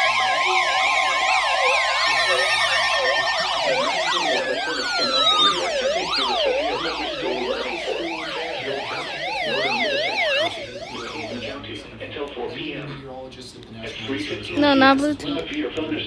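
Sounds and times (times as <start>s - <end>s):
long tones sliding down: 0.0s - 11.6s
sirens wailing: 0.0s - 11.8s.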